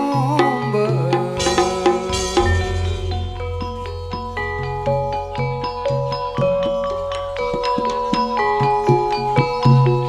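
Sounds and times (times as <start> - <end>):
gamelan music with metal keys: 0.0 - 10.0.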